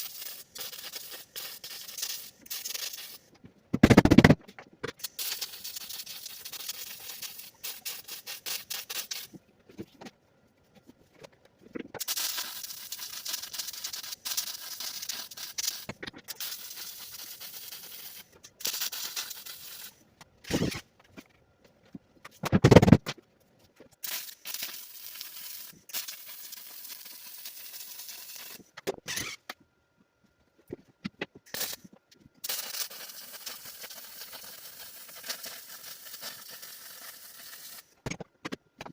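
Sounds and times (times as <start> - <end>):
welder crackling hiss: 0.0 - 3.3, 5.0 - 9.4, 12.0 - 20.7, 24.0 - 28.7, 31.5 - 38.0
heavy thumps: 3.7 - 4.4.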